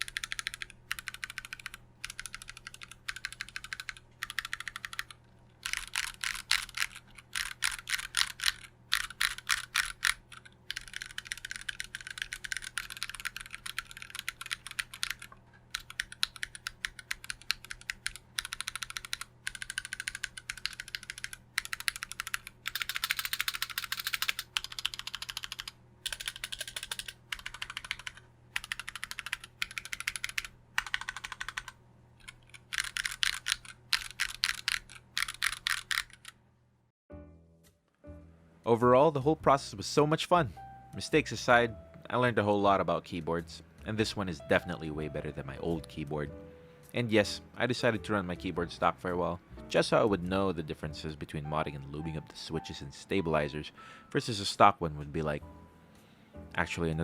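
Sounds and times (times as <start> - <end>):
mechanical keyboard typing clacks: 0.0 - 36.4.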